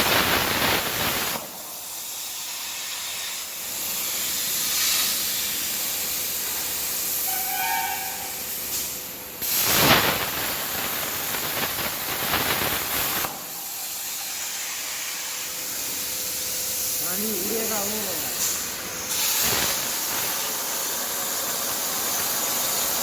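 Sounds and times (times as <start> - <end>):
plasma torch hissing: 0.0 - 23.0.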